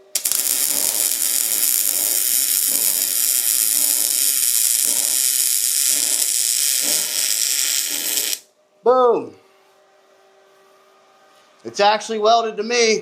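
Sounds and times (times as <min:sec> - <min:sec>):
welder arc crackling sizzle: 0:00.0 - 0:08.5.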